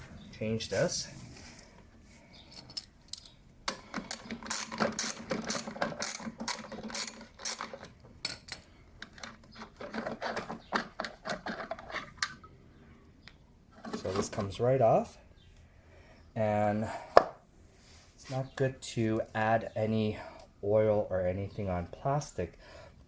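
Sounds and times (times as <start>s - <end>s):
ratchet wrench clicking: 4.0s - 7.7s.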